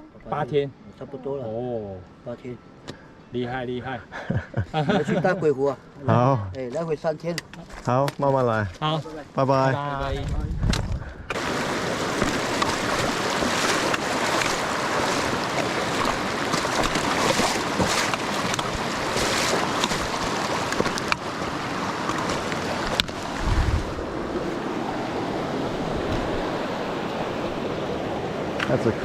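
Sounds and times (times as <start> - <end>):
river flowing over rocks: 11.3 - 29.0.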